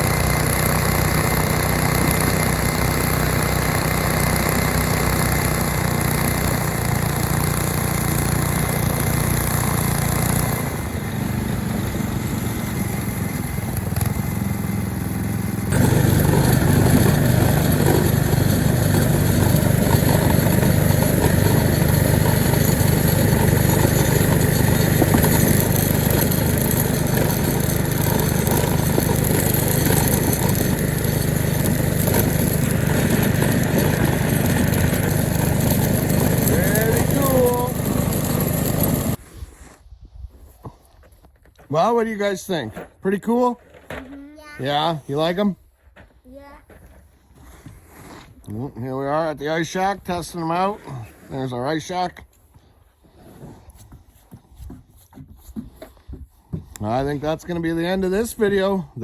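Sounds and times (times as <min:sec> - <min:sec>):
small engine running: 0:00.0 - 0:39.2.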